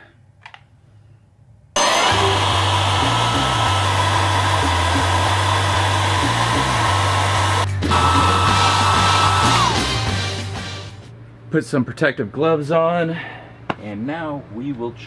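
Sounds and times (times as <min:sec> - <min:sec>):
hair dryer blowing: 0:01.8 - 0:10.0
background music with bass line: 0:01.8 - 0:11.1.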